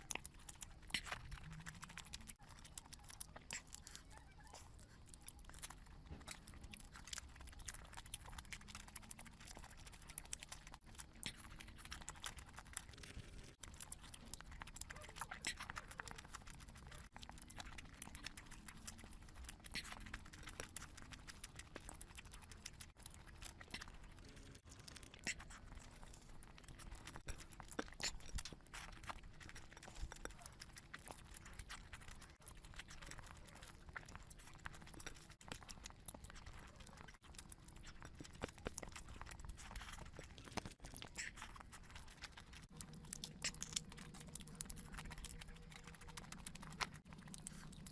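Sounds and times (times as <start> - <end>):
person chewing food: 0.0 - 47.9.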